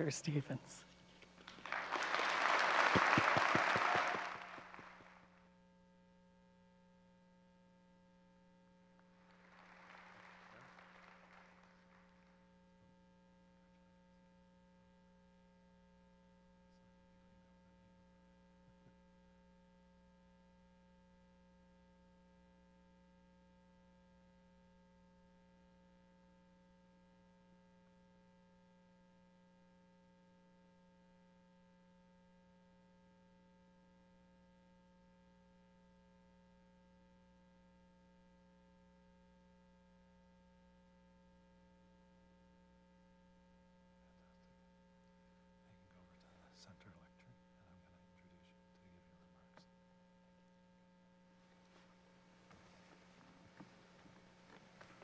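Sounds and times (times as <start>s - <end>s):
audience applauding: 1.4s - 5.2s, 9.1s - 12.3s.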